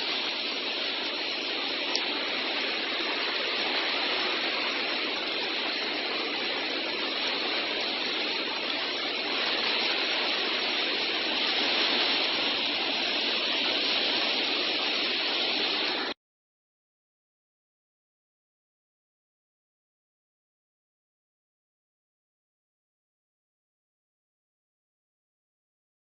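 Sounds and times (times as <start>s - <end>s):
waterfall rushing: 0.0s - 16.2s.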